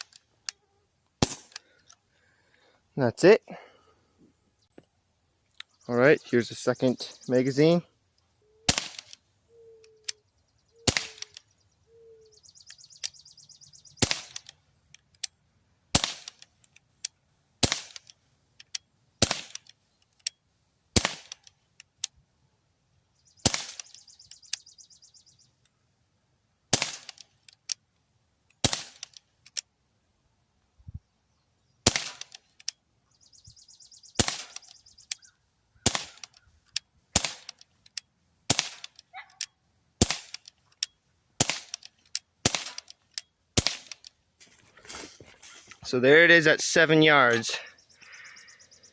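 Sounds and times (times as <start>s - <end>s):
bb pistol shots popping: 1.2s - 1.6s, 8.7s - 9.2s, 10.8s - 11.4s, 14.0s - 14.6s, 15.9s - 16.5s, 17.6s - 18.1s, 19.2s - 19.7s, 20.9s - 21.5s, 23.4s - 24.4s, 26.7s - 27.3s, 28.6s - 29.2s, 31.8s - 32.5s, 34.2s - 36.4s, 37.1s - 37.6s, 38.5s - 39.4s, 40.0s - 40.5s, 41.4s - 43.0s, 43.6s - 44.1s.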